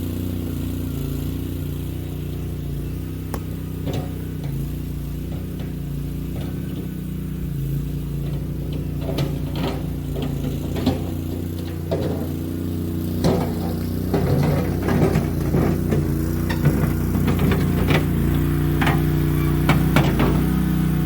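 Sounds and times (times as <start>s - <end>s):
small engine running steadily: 0.0s - 21.0s
clanks and clicks: 8.1s - 12.5s, 13.1s - 20.8s.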